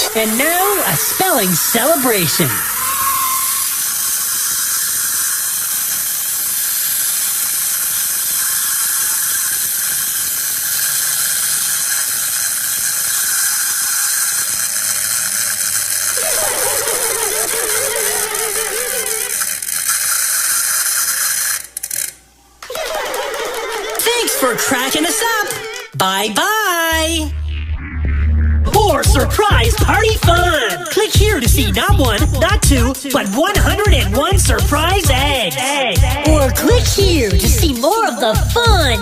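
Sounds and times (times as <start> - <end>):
wavering tone: 0.0 - 4.2, 16.1 - 19.7
noisemaker ratcheting rattle: 0.0 - 26.0, 28.8 - 39.0.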